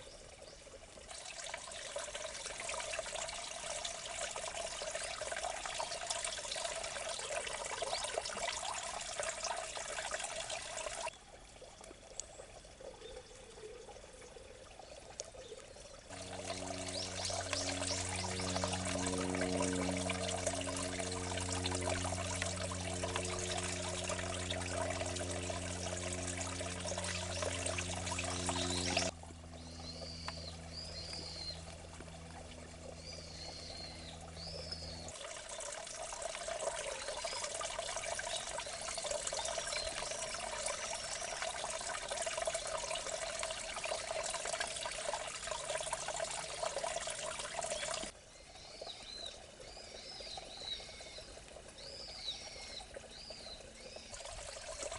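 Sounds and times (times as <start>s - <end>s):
water pouring and trickling: 0.0s - 54.9s
steady low hum: 15.8s - 36.0s.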